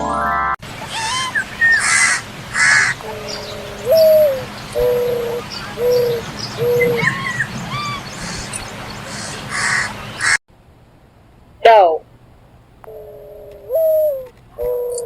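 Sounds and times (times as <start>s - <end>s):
harsh caw-like bird calls: 0.8s - 10.4s
low hooting coos: 0.8s - 10.4s, 12.8s - 15.0s
small birds chirping and whistling: 0.8s - 10.4s, 13.7s - 15.0s.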